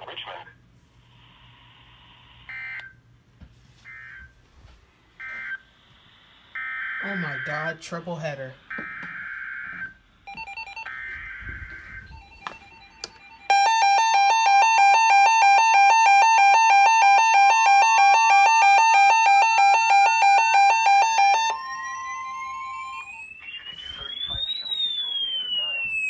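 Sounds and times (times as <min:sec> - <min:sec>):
alternating two-pitch alert tone: 0:10.3 - 0:26.0
steady alert tone: 0:10.3 - 0:26.0.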